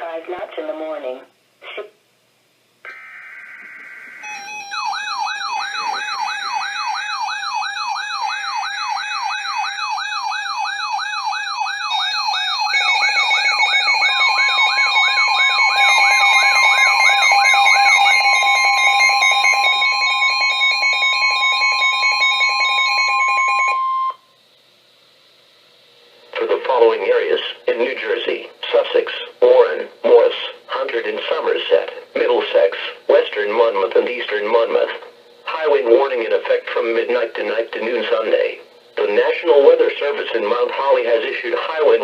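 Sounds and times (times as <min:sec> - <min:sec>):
pulsed data bursts: 0:02.9 - 0:23.7
electronic siren whoop: 0:02.9 - 0:24.3
rapid pulsed beeping alarm: 0:02.9 - 0:24.4
steady warning tone: 0:02.9 - 0:24.4, 0:26.3 - 0:42.0
warbling alarm: 0:02.9 - 0:24.4.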